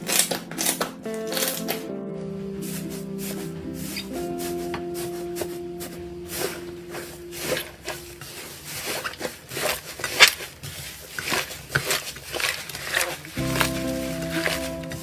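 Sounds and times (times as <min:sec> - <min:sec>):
background music: 0:00.0 - 0:08.6, 0:13.4 - 0:15.0.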